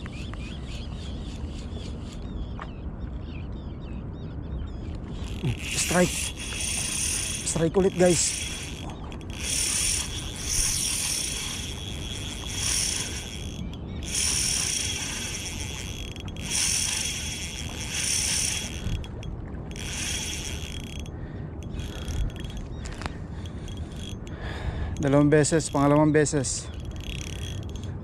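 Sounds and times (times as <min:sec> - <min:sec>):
spinning reel running: 0:05.2 - 0:22.7, 0:23.4 - 0:24.3, 0:25.0 - 0:27.9.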